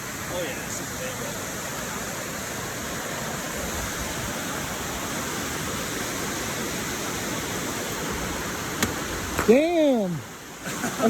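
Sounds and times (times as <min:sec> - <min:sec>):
water rushing down waterfall: 0:00.0 - 0:11.0.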